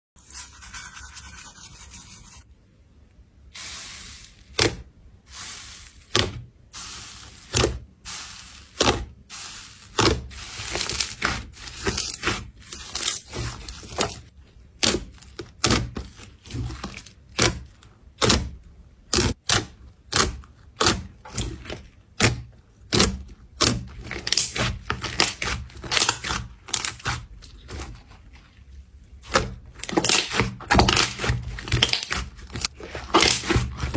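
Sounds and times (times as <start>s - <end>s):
slime squishing and rubbing: 3.5s - 14.3s, 24.0s - 33.9s.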